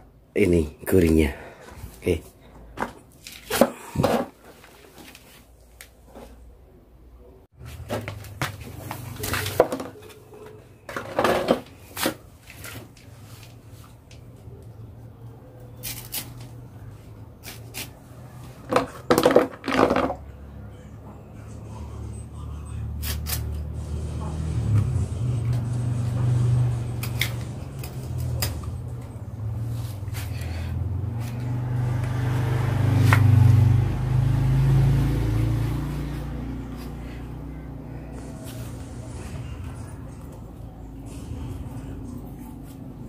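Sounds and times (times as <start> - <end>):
vehicle engine passing: 19.7 - 43.0.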